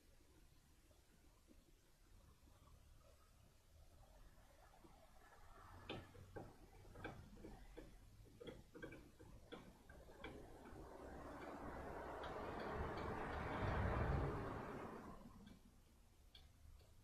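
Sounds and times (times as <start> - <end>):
light metallic clicks and taps: 5.7 - 17.0
rushing noise: 10.8 - 15.3.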